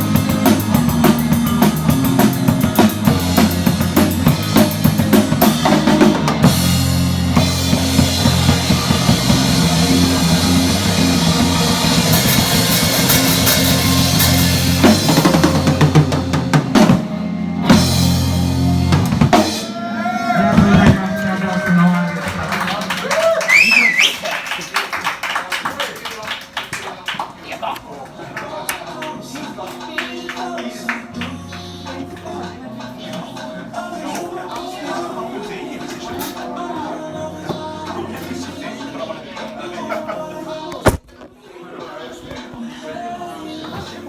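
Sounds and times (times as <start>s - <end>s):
drum kit beat: 0.0s - 24.0s
live band playing: 0.0s - 24.1s.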